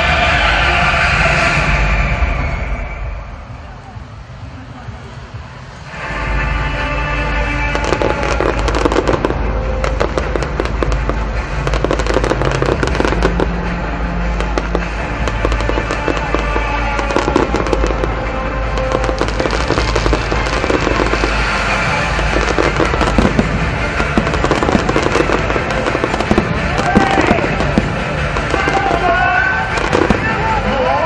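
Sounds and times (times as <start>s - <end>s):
music playing: 0.0s - 31.0s
fireworks bangs and crackles: 6.5s - 31.0s.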